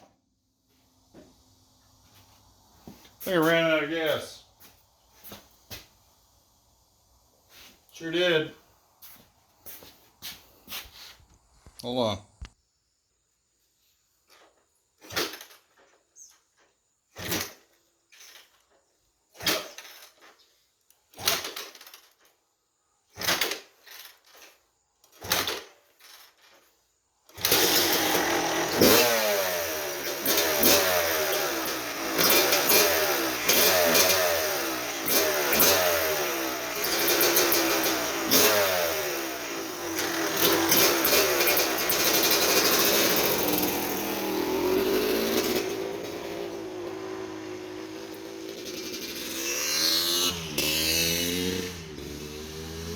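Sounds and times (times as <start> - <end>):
motorcycle kick-start: 14.3 - 22.4, 23.1 - 52.9
motocross engine revving: 27.4 - 52.9.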